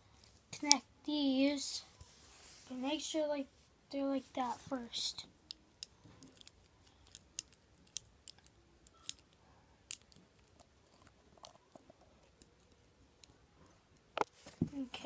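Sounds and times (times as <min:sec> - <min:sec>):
plastic bricks clicking together: 0:05.5 - 0:12.5.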